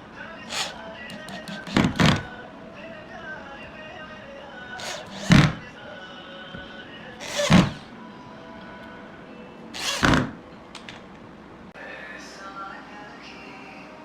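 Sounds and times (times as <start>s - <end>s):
soft background music: 0.0s - 10.1s
heavy thuds: 4.8s - 5.7s, 6.6s - 7.9s.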